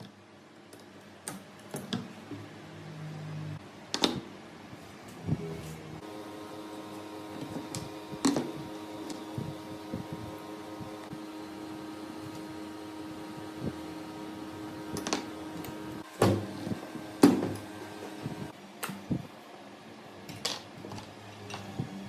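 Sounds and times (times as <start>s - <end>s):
steady hum: 0.0s - 22.0s.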